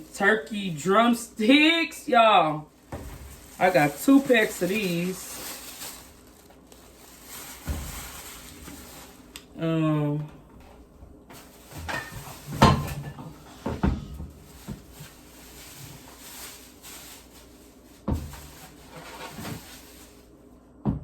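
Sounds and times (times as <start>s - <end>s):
packages knocking and thudding: 2.8s - 9.3s, 11.3s - 20.0s.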